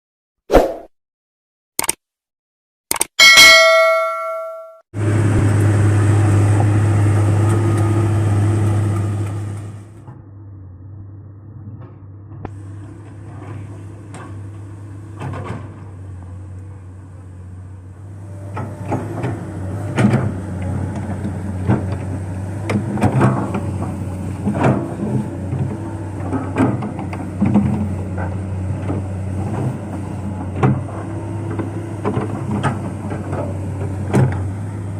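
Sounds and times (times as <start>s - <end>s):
short ringing chime: 3.2s - 4.8s
excavator diesel engine running: 5.0s - 34.9s.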